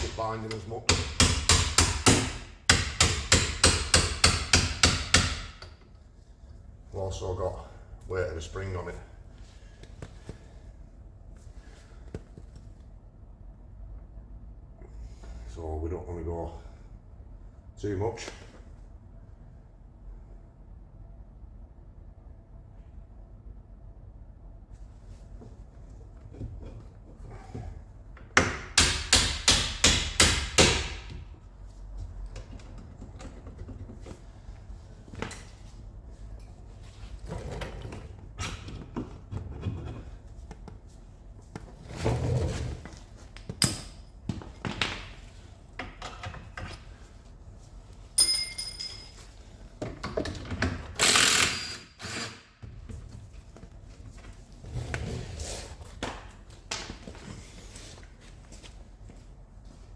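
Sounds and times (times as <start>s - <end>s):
tools and metal parts clattering: 43.4s - 45.0s, 48.2s - 51.6s
ringing metal knock: 48.2s - 49.1s.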